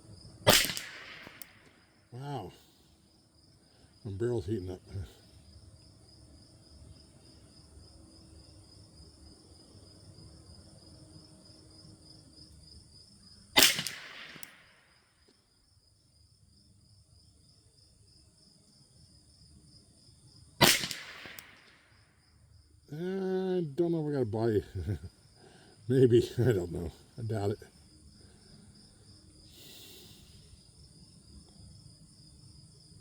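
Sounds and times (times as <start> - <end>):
high insect trill: 0.0 - 33.0
rifle shots: 0.5 - 1.7, 13.6 - 14.8, 20.6 - 21.8.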